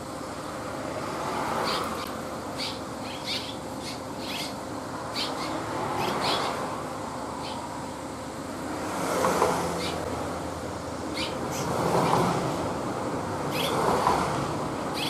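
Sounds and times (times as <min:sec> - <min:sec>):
swallows chirping: 0:01.6 - 0:06.7, 0:07.4 - 0:07.7, 0:09.8 - 0:10.0, 0:11.1 - 0:12.2, 0:13.5 - 0:13.8.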